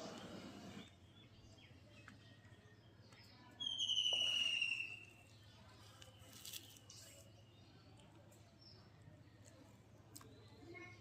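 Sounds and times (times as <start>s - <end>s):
whistled call: 3.6s - 5.2s.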